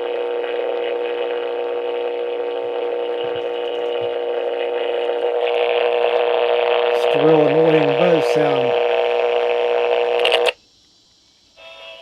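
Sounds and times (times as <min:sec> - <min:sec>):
alarm clock electronic buzz: 0:00.0 - 0:10.6.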